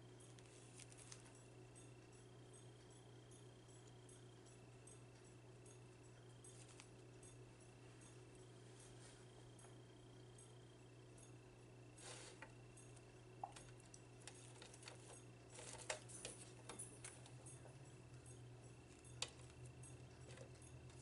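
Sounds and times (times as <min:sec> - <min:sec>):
small crackles: 0:00.2 - 0:02.0, 0:06.2 - 0:07.4, 0:12.0 - 0:21.0.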